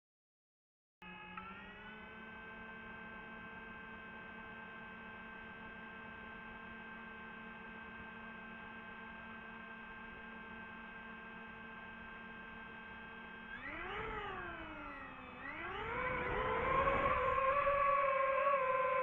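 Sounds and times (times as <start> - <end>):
drone propellers whining: 12.5 - 19.0.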